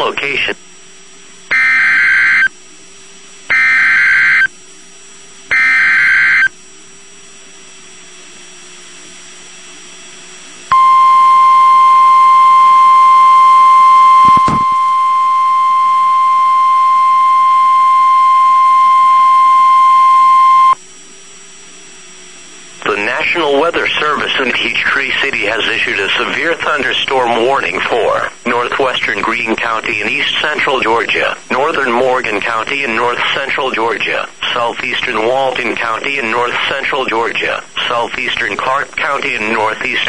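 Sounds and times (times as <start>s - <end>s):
radio hiss: 0.0s - 3.0s, 22.0s - 40.0s
steady warning alarm tone: 1.5s - 2.6s, 3.5s - 4.6s, 5.5s - 6.6s, 10.7s - 20.8s
screechy digital data bursts: 3.5s - 4.5s, 5.5s - 6.5s.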